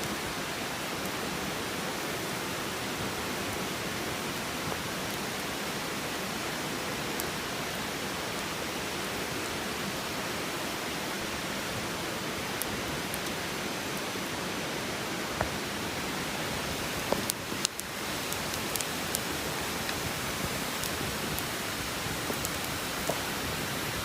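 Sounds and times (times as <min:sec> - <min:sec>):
campfire crackling and popping: 0:02.5 - 0:05.5, 0:12.4 - 0:14.2, 0:15.2 - 0:24.0
fire rushing noise: 0:12.6 - 0:24.0.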